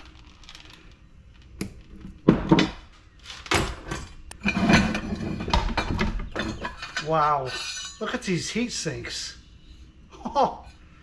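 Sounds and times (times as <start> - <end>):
metal parts knocking and clattering: 2.1 - 8.1.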